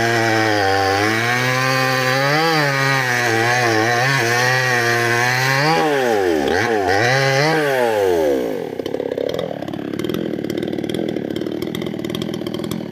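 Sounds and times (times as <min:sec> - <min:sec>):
chainsaw cutting wood: 0:00.0 - 0:12.9.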